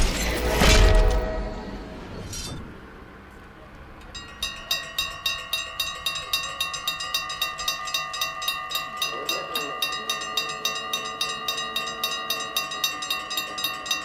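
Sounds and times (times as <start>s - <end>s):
level crossing warning bell ringing: 4.0s - 14.0s.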